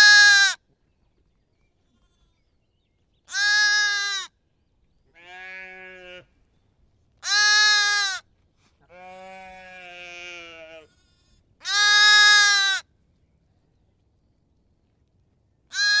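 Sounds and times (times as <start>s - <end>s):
sheep bleating: 5.2s - 6.3s, 8.8s - 12.8s.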